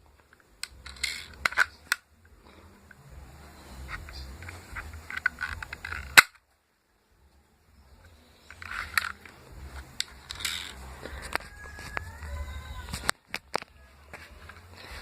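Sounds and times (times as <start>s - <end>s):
toy pistol firing crack: 5.2s - 6.4s.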